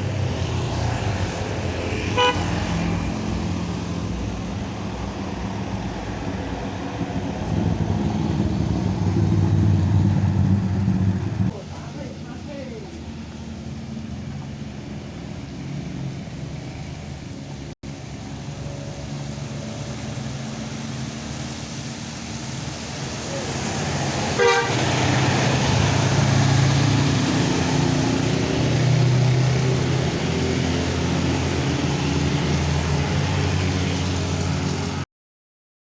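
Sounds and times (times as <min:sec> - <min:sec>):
vehicle horn toots: 0:02.1 - 0:02.5, 0:24.4 - 0:24.9
heavy vehicle engine running: 0:03.7 - 0:12.1.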